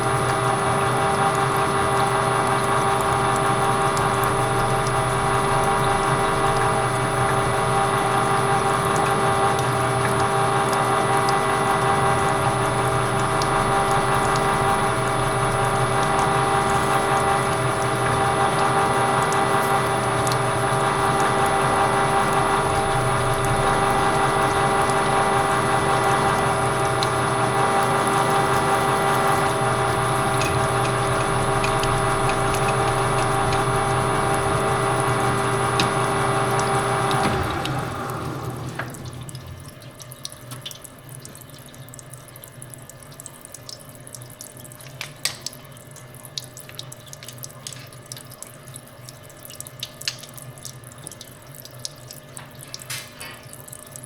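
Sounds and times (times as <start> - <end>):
machine tool whine: 0.0 - 39.3
machine winding down: 11.4 - 39.5.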